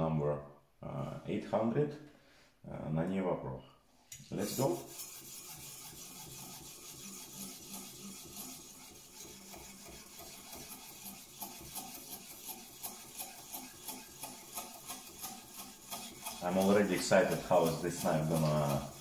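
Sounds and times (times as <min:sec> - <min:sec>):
whetstone rasping on knife: 0:04.4 - 0:19.0.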